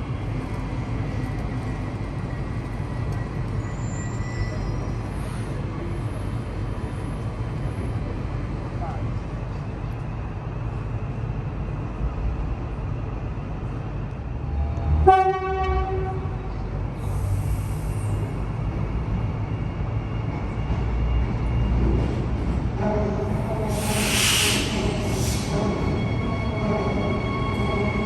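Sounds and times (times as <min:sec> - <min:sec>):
electric train rumbling: 0:00.0 - 0:28.0
train horn toot: 0:15.0 - 0:16.5
brief hiss: 0:23.7 - 0:25.6.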